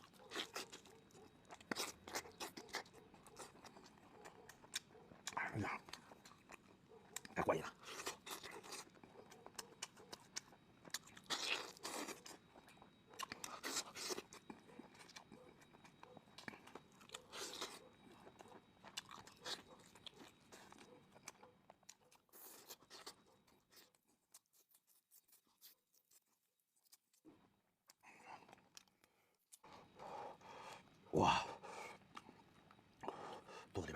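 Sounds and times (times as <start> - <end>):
person chewing and crunching: 0.0 - 33.7.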